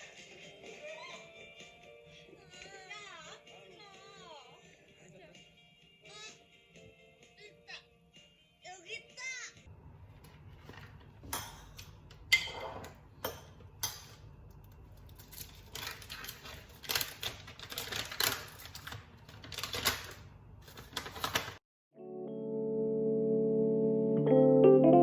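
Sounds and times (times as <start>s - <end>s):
soft piano music: 22.0s - 25.0s.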